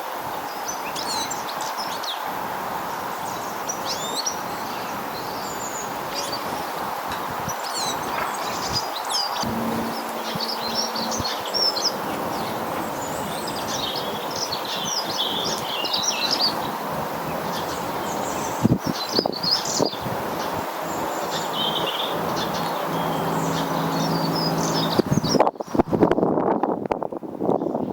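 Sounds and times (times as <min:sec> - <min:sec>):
small birds chirping and twittering: 0:00.3 - 0:26.1
steady background rush: 0:09.4 - 0:25.3.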